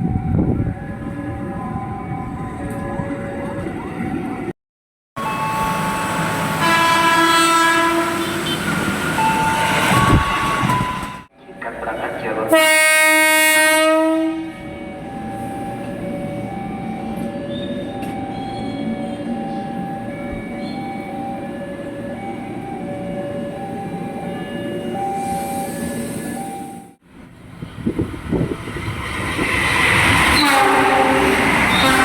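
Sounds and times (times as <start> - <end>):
train horn chord: 5.2 - 8.7, 9.8 - 10.8, 12.5 - 14.6, 30.4 - 32.0
train running by: 5.2 - 32.0.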